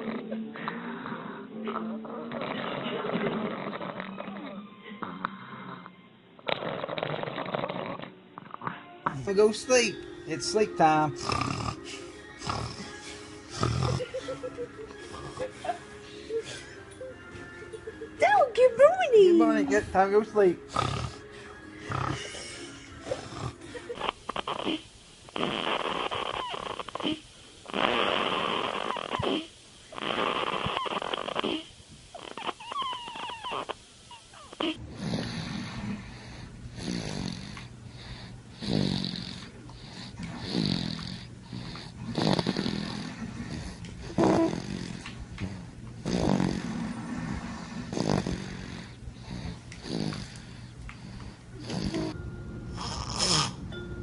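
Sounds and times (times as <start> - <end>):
babies snoring: 0.0 - 16.8, 19.7 - 53.7
steady low hum: 33.8 - 54.0.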